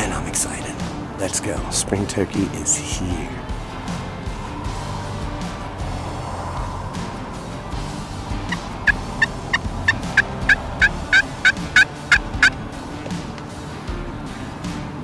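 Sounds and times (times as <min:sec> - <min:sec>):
turkey yelps: 0:08.5 - 0:12.6.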